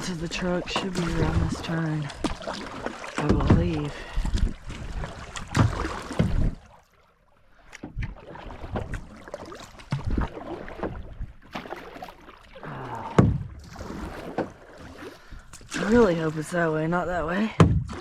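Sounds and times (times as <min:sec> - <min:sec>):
water splashing: 0:00.0 - 0:18.0.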